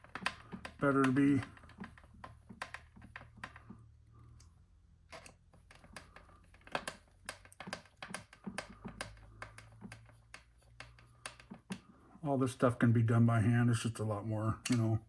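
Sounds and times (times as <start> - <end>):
small plastic parts clicking: 0.0 - 11.9.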